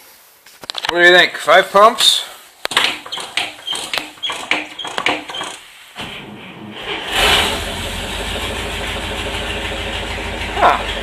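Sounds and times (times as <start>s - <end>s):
starter motor cranking engine: 2.7s - 11.0s
engine idling: 6.1s - 11.0s.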